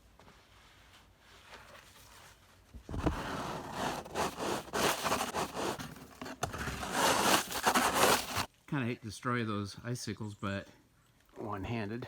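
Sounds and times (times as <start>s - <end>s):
snow scraping and crunching: 3.0s - 8.5s.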